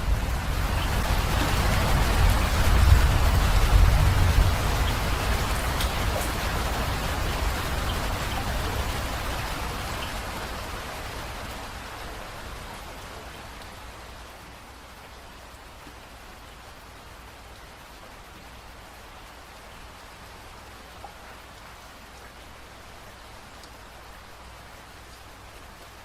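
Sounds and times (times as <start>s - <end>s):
rain falling: 0.0s - 26.0s.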